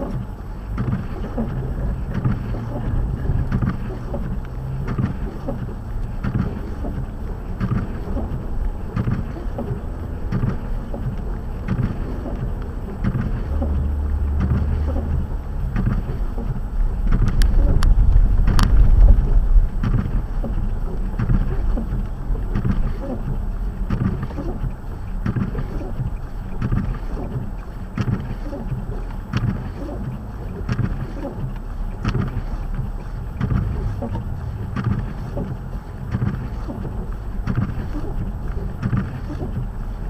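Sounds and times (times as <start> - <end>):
car engine and road rumble: 0.0 - 40.0.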